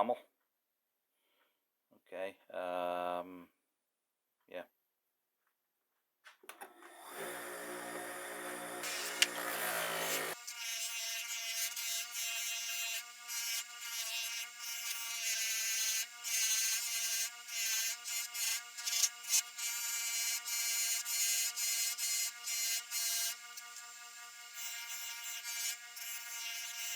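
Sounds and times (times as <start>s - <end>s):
polishing wheel whining: 6.9s - 10.4s
metal rubbing on polishing wheel: 8.8s - 10.4s.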